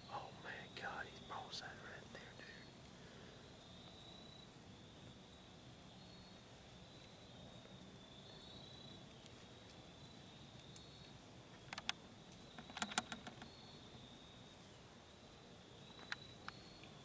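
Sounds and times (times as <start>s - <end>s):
sharp crackles and snaps: 10.5s - 13.4s.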